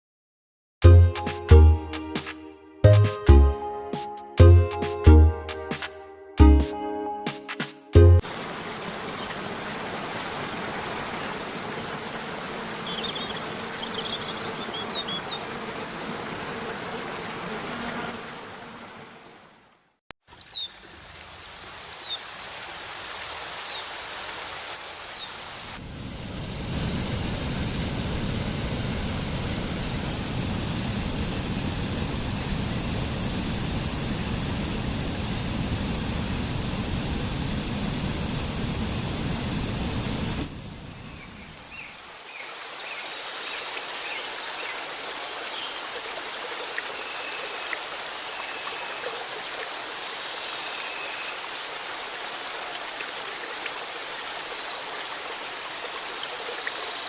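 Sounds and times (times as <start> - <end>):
waterfall roaring: 8.2 - 13.7
flowing water rushing: 8.2 - 19.7, 20.3 - 57.0.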